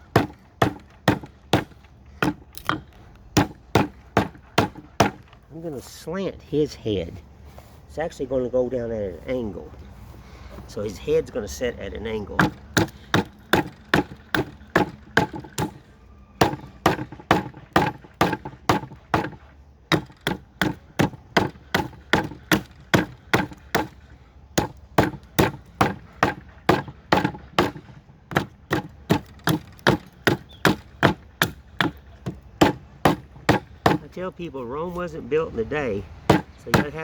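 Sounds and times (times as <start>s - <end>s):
hatchet chopping wood: 0.0s - 5.4s, 12.3s - 15.8s, 16.4s - 34.1s, 36.2s - 37.0s.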